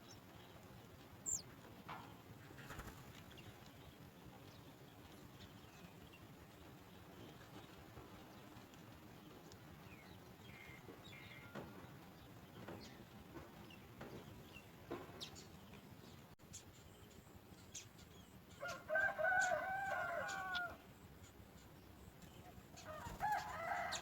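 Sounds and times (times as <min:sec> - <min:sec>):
rooster crowing: 0:18.7 - 0:20.8, 0:22.9 - 0:24.0.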